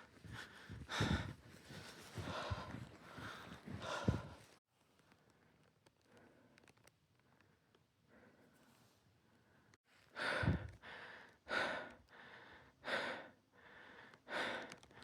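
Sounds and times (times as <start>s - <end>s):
heavy labouring breathing: 0.0s - 4.4s.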